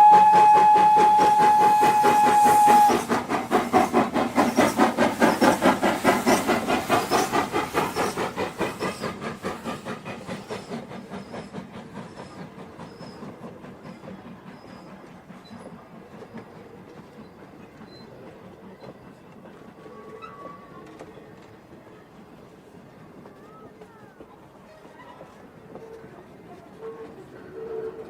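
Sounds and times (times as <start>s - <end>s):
train horn: 0.0s - 3.0s, 26.7s - 28.0s
train wheels clattering over rails: 0.3s - 28.0s.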